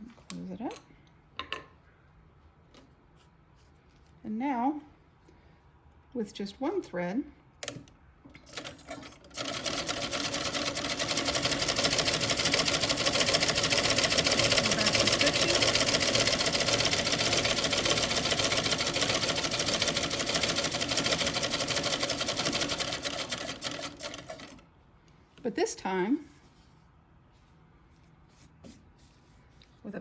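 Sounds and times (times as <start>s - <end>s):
treadle sewing machine clattering: 8.5s - 24.6s.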